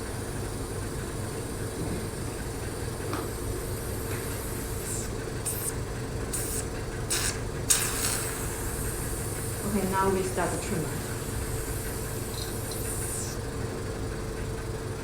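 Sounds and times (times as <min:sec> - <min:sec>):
vacuum pump humming: 0:00.0 - 0:15.0
short hisses: 0:04.8 - 0:09.7, 0:11.1 - 0:13.4.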